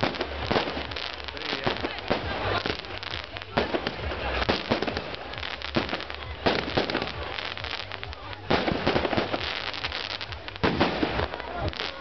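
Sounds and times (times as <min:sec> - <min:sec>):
fireworks crackling: 0:00.0 - 0:12.0
firework shells bursting: 0:08.4 - 0:12.0.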